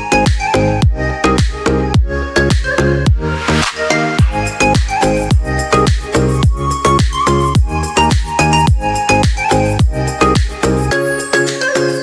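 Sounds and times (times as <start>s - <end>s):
electronic dance music: 3.1s - 7.3s.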